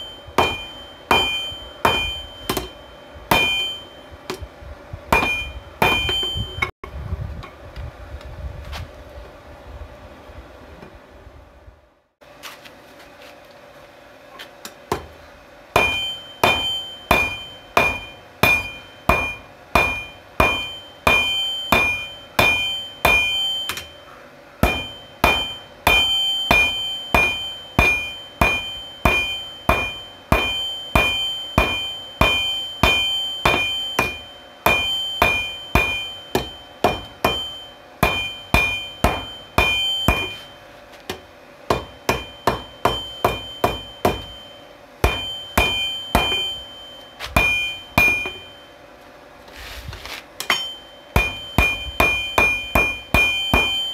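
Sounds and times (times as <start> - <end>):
hammer ringing on anvil: 0.0 - 4.4, 5.1 - 6.7, 15.7 - 48.8, 50.4 - 53.9.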